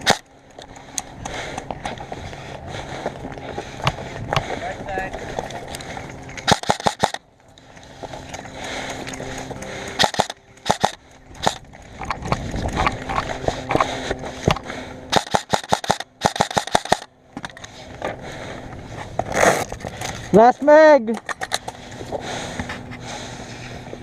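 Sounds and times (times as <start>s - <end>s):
airsoft guns firing: 0.0s - 0.2s, 6.4s - 7.2s, 10.0s - 11.6s, 15.1s - 17.1s.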